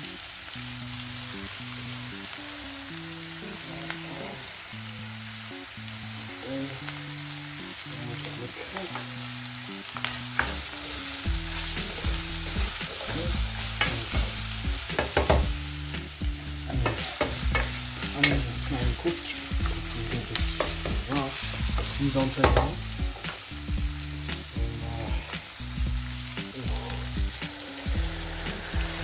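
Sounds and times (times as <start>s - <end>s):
food sizzling in a pan: 0.0s - 29.0s
utensil knocking against pan: 14.9s - 15.5s, 16.8s - 18.5s, 19.6s - 23.4s.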